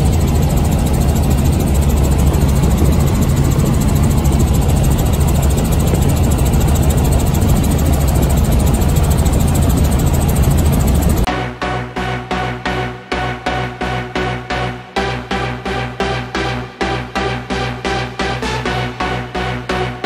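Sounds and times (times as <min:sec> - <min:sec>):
helicopter engine and rotor drone: 0:00.0 - 0:20.0.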